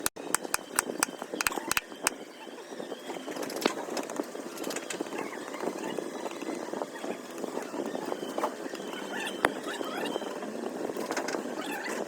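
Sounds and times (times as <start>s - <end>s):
mallet tapping chisel: 0.0s - 2.0s.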